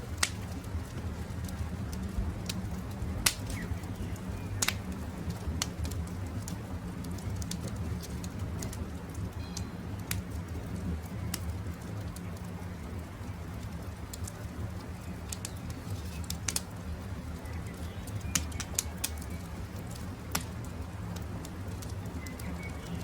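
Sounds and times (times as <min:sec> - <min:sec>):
campfire crackling and popping: 0:00.0 - 0:23.0
birds calling softly: 0:03.4 - 0:05.4, 0:09.3 - 0:10.1, 0:14.4 - 0:20.0, 0:21.8 - 0:23.0.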